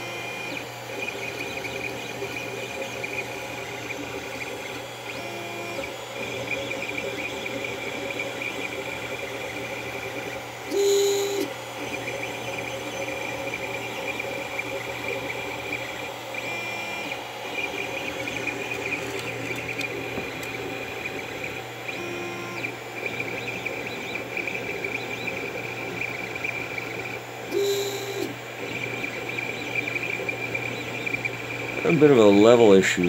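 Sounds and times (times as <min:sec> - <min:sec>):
fan hum: 0:00.0 - 0:33.0
stepper motors whining: 0:00.0 - 0:33.0.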